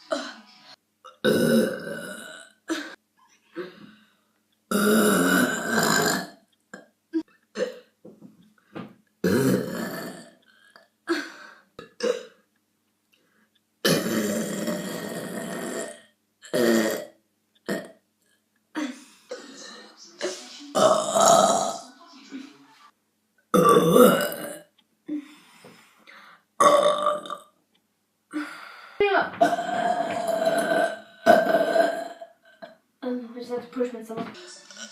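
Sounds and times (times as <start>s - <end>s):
person burping: 1.0s - 3.0s, 4.7s - 7.9s, 9.2s - 12.4s, 13.8s - 18.0s, 20.2s - 21.8s, 23.5s - 25.2s, 26.6s - 27.6s, 28.3s - 32.8s.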